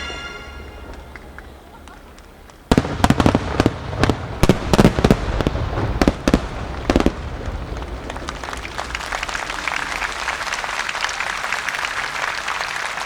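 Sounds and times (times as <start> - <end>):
fireworks bursting with sharp bangs: 2.6 - 9.6.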